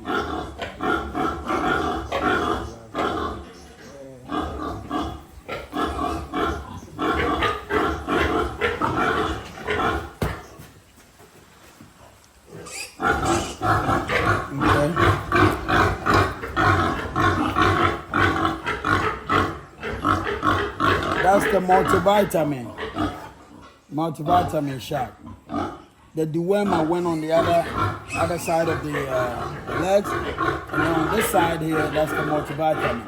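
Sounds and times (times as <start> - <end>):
piglet squealing: 12.6 - 19.3, 26.8 - 33.0.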